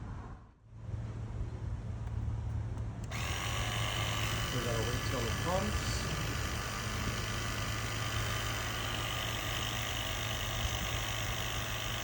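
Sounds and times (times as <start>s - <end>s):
electric pump humming: 3.0s - 12.0s.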